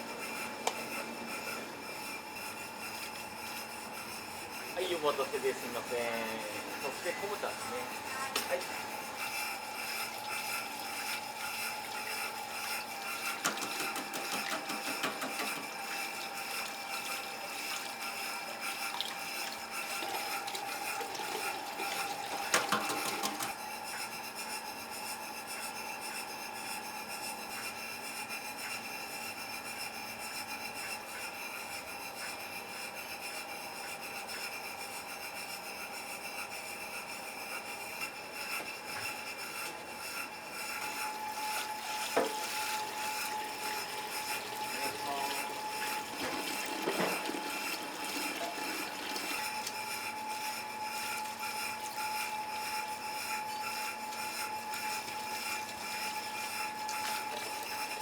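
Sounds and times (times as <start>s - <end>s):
kitchen equipment humming: 0.0s - 23.9s, 37.5s - 58.0s.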